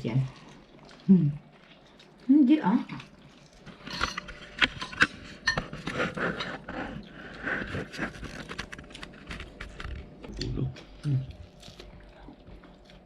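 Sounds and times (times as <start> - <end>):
eating clicks and scrapes: 2.9 - 13.0.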